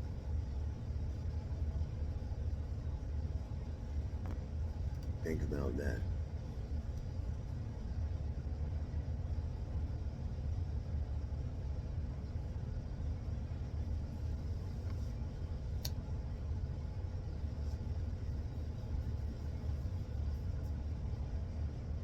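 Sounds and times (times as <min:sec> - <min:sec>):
steady low rumble: 0:00.0 - 0:22.0
faint click: 0:04.2 - 0:05.2, 0:15.8 - 0:16.0.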